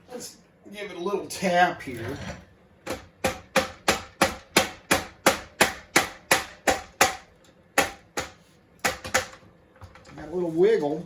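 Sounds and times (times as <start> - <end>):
hammer tapping on metal: 2.9 - 9.3.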